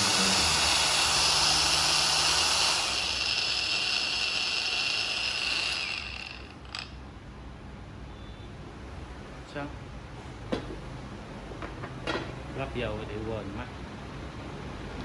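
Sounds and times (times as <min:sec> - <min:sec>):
power tool motor whining: 0:00.0 - 0:06.9.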